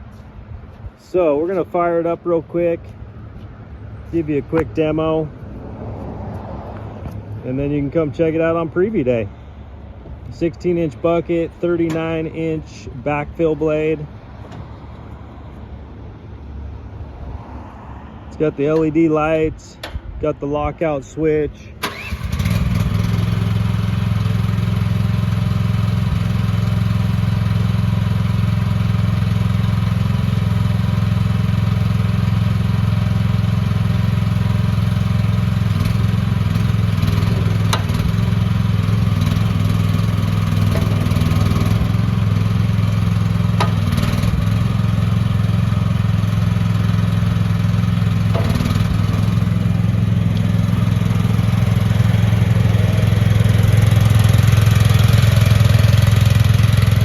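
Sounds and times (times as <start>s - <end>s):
small gasoline engine running: 21.8s - 57.0s.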